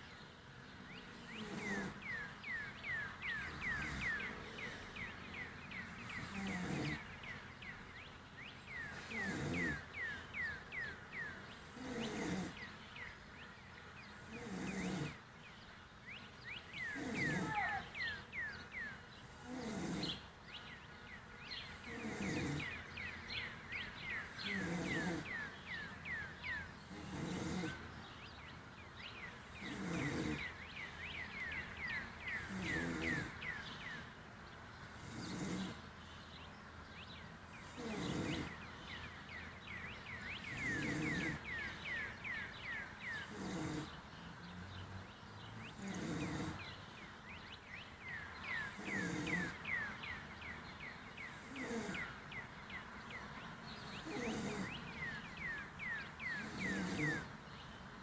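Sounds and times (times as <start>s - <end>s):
man snoring: 1.4s - 2.1s, 3.6s - 5.0s, 6.1s - 7.1s, 9.0s - 9.8s, 11.7s - 12.6s, 14.3s - 15.2s, 17.0s - 17.8s, 19.4s - 20.2s, 21.8s - 22.8s, 24.4s - 25.4s, 26.9s - 27.9s, 29.6s - 30.5s, 32.4s - 33.4s, 35.0s - 35.8s, 37.7s - 38.6s, 40.4s - 41.5s, 43.2s - 43.9s, 45.5s - 46.6s, 48.8s - 49.6s, 51.4s - 52.1s, 54.0s - 54.8s, 56.4s - 57.3s.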